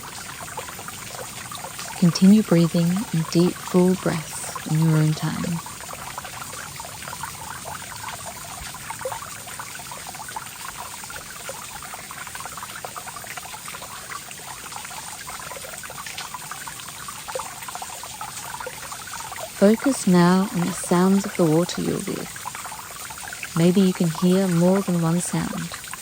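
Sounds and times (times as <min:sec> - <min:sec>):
waterfall splashing: 0:00.0 - 0:05.8, 0:19.2 - 0:26.0.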